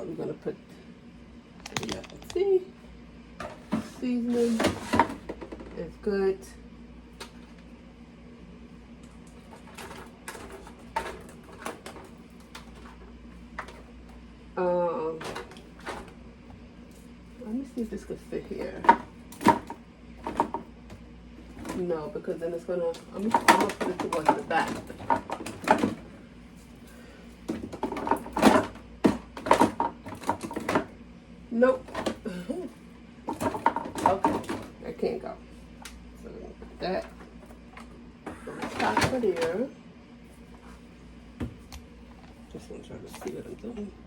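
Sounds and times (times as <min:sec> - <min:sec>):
low steady hum: 0:00.0 - 0:44.0
containers knocking and clattering: 0:18.4 - 0:20.7, 0:22.8 - 0:26.1, 0:27.5 - 0:30.9, 0:31.7 - 0:35.0, 0:38.3 - 0:39.7.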